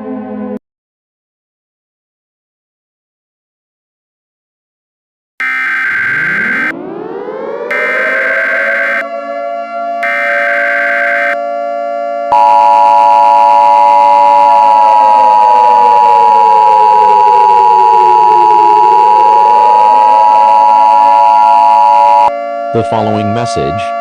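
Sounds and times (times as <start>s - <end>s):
siren: 0.0s - 0.6s, 5.4s - 24.0s
two-tone attention signal: 5.4s - 6.7s, 7.7s - 9.0s, 10.0s - 11.4s, 12.3s - 24.0s
digital data burst: 7.7s - 9.0s, 10.0s - 11.4s.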